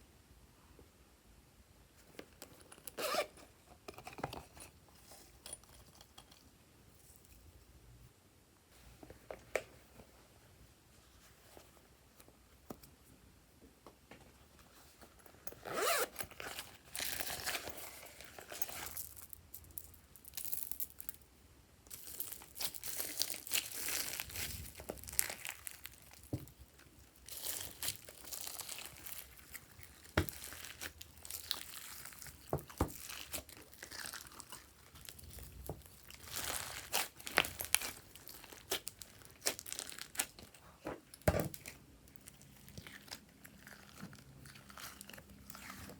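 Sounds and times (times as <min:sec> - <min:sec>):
slime crackling and tearing: 0:22.0 - 0:26.3, 0:27.2 - 0:40.4.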